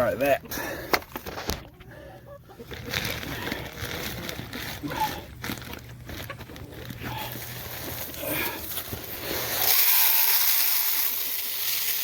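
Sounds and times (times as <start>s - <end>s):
shell pouring hiss: 9.2s - 12.0s.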